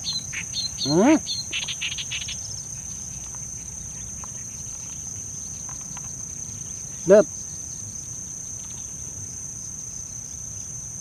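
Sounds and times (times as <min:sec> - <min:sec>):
bird chirping and trilling: 0:00.0 - 0:02.5
insects droning: 0:00.0 - 0:11.0.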